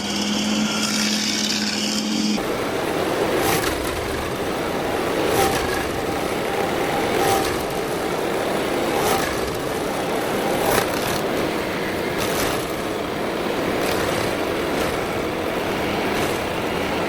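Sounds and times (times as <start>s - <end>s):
stump grinder engine running: 0.0s - 11.3s.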